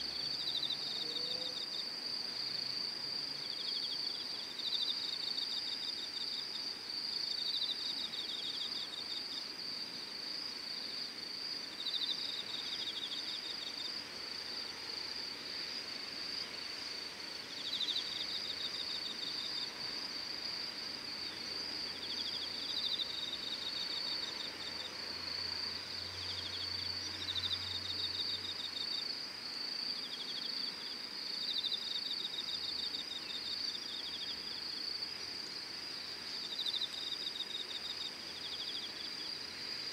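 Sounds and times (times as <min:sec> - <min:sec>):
insect rapid pulsed chirping: 0:03.5 - 0:39.9
insect high-pitched trill: 0:16.2 - 0:39.9.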